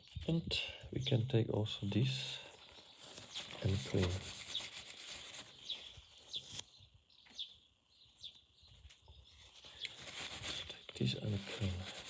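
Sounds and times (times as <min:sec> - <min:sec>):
cloth rubbing plastic: 0:02.9 - 0:06.6, 0:09.5 - 0:12.0.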